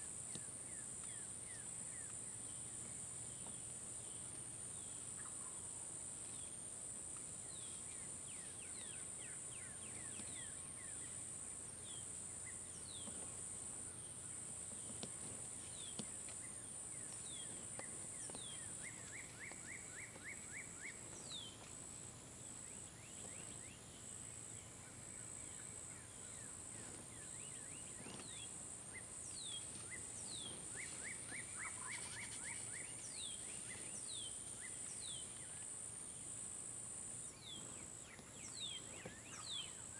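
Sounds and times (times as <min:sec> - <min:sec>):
songbirds chirping and trilling: 0:07.4 - 0:21.8, 0:22.4 - 0:36.2.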